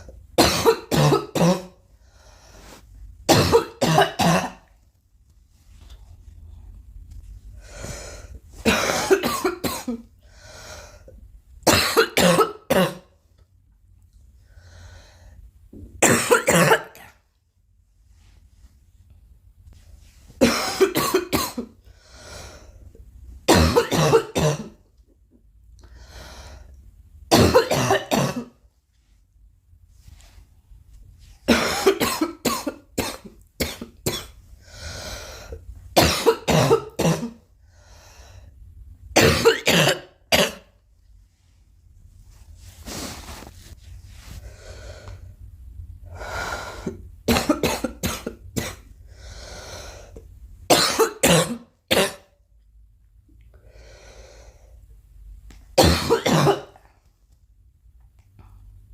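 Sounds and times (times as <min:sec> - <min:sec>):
girl coughing: 0:00.4 - 0:01.8, 0:03.3 - 0:04.7, 0:08.6 - 0:10.1, 0:11.7 - 0:13.1, 0:16.0 - 0:17.2, 0:20.4 - 0:21.8, 0:23.5 - 0:24.8, 0:27.3 - 0:28.6, 0:31.5 - 0:34.4, 0:36.0 - 0:37.4, 0:39.2 - 0:40.7, 0:47.3 - 0:48.9, 0:50.7 - 0:52.3, 0:55.8 - 0:56.8.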